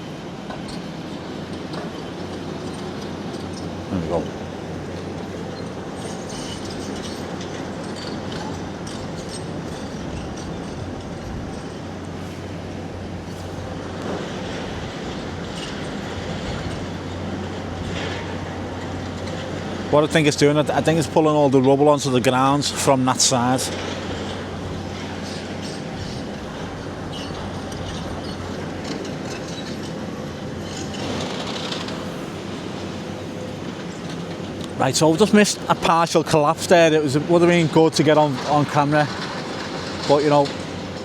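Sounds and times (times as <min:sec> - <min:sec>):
distant demolition rumble: 0:00.0 - 0:41.0
heavy machine engine hum: 0:00.0 - 0:41.0
falling debris clattering: 0:30.6 - 0:32.7.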